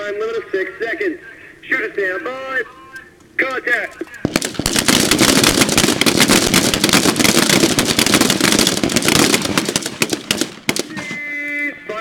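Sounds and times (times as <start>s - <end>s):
many rifles shooting: 4.0s - 11.4s.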